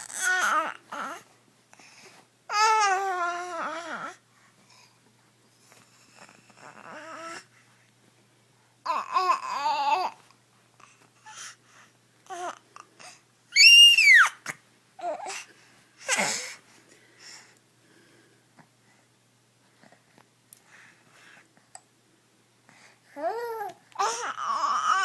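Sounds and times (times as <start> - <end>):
babies babbling and cooing: 8.8 - 10.3, 23.2 - 25.0
baby squealing: 13.5 - 14.5.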